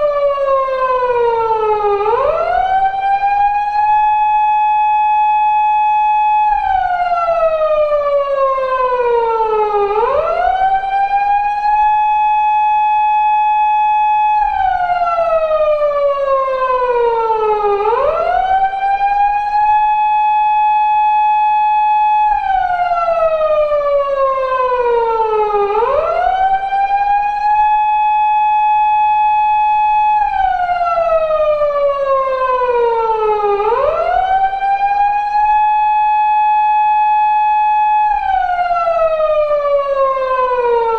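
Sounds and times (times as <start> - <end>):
police car siren: 0.0 - 40.9.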